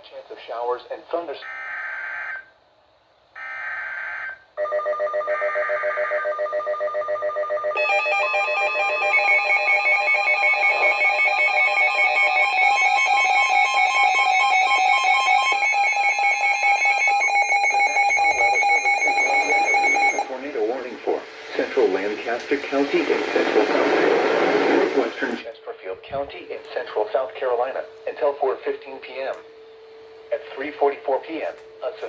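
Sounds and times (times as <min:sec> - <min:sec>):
rapidly pulsing electronic beeps: 0:07.8 - 0:32.0
digital data bursts: 0:08.8 - 0:29.2.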